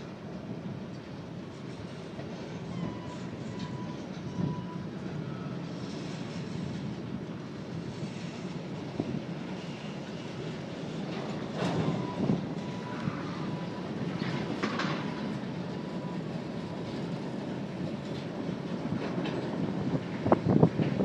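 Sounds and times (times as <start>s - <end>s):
freight cars rumbling: 0.0s - 21.0s
faint thin squeal: 1.9s - 6.8s, 11.6s - 14.4s.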